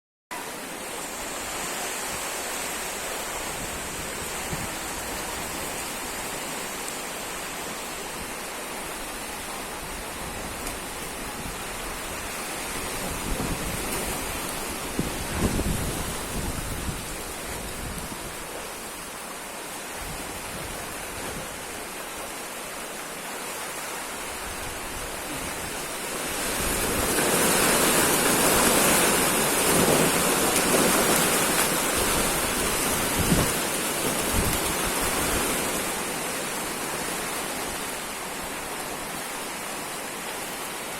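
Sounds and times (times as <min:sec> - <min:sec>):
strong wind blowing: 0:03.0 - 0:06.2, 0:09.0 - 0:19.0, 0:24.4 - 0:38.8.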